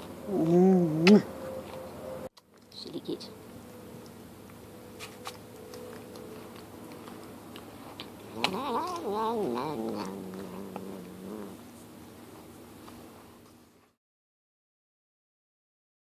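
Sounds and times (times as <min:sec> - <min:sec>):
cat yowling: 0:08.4 - 0:11.5.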